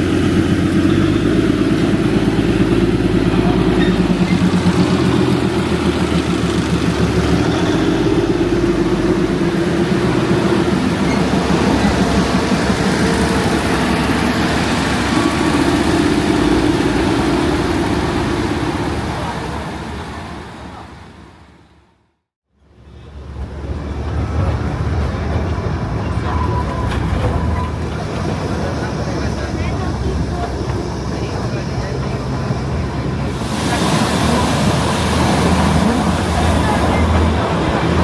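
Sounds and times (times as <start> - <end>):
diesel locomotive engine running: 0.0 - 38.0.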